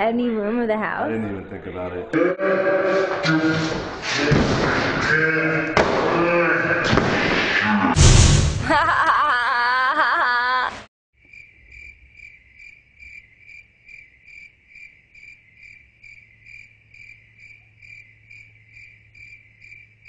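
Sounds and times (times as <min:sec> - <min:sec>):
cricket chirping: 0:11.2 - 0:20.0.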